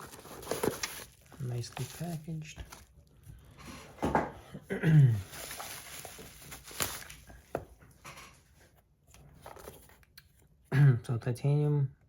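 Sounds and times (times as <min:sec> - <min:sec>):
packaging rustling: 0:00.0 - 0:03.3, 0:05.2 - 0:07.6.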